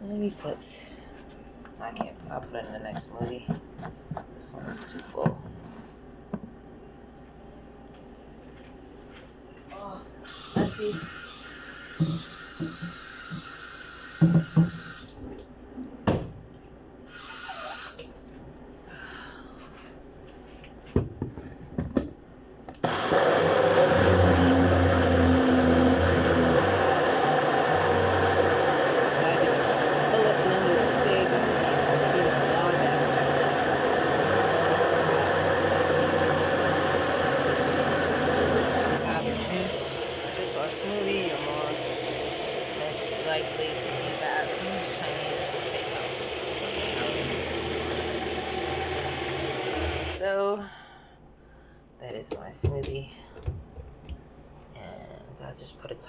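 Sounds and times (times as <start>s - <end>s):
cup blender whirring: 10.2s - 15.2s, 17.1s - 18.1s, 22.8s - 50.2s
blender parts knocking and clacking: 11.9s - 13.6s.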